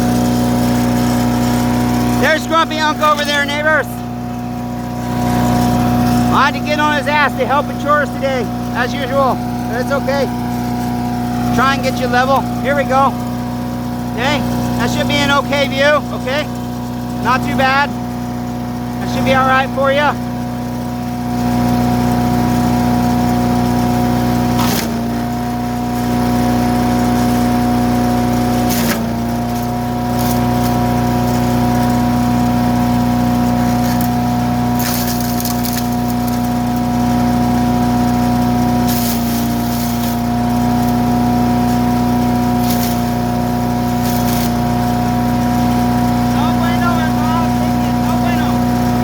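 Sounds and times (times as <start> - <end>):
wood chipper engine running: 0.0 - 49.0
crackling of material being chipped: 33.6 - 36.8.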